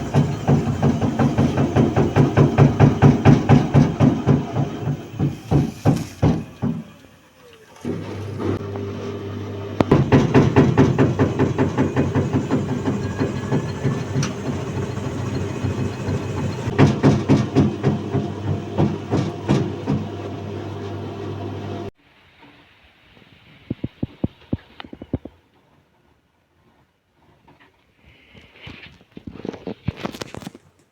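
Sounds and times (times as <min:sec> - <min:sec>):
washing machine drum knocking: 0:00.0 - 0:06.9, 0:09.8 - 0:20.2
washing machine motor humming: 0:00.0 - 0:21.9.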